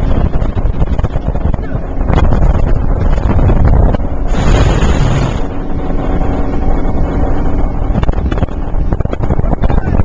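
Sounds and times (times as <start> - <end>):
speedboat engine drone: 0.0 - 10.0
wind noise on microphone: 0.0 - 10.0.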